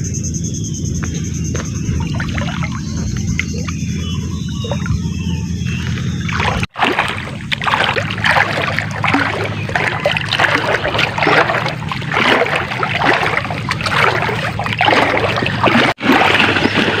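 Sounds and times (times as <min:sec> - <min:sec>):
water splashing and sloshing: 0:01.0 - 0:17.0.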